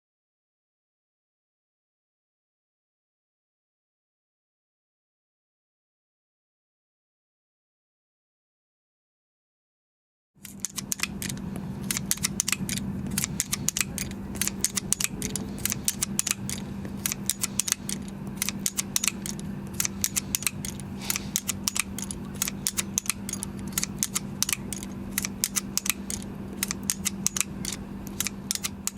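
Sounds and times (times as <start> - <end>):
pruning shears clicking: 10.4 - 28.9
steady low hum: 10.4 - 28.9.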